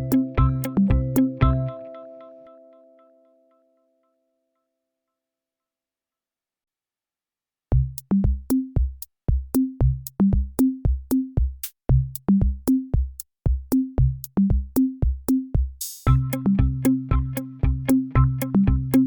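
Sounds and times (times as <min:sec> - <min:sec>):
drum-machine beat: 0:00.0 - 0:01.7, 0:07.7 - 0:19.0.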